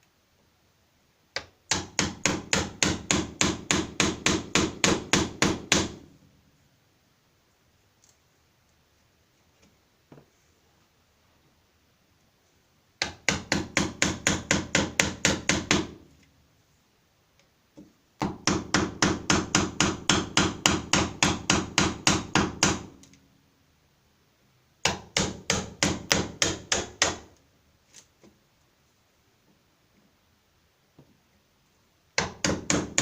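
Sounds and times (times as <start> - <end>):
hammer striking chisel into wood: 1.4 - 6.0, 13.0 - 16.0, 18.2 - 23.0, 24.8 - 27.3, 32.2 - 33.0.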